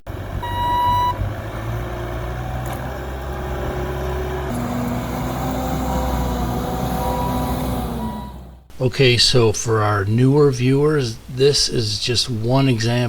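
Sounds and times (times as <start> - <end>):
vehicle engine rumbling: 0.0 - 9.2
short beep: 0.4 - 1.2, 8.0 - 8.5.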